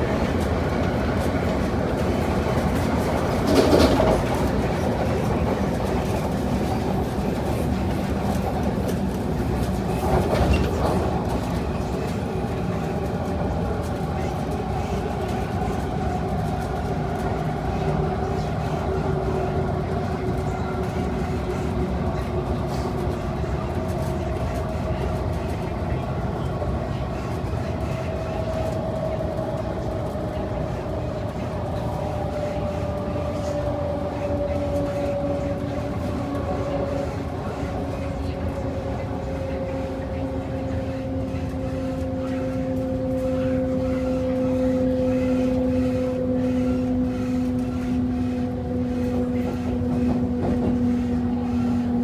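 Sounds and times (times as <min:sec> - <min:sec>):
rail rumble: 0:00.0 - 0:52.0.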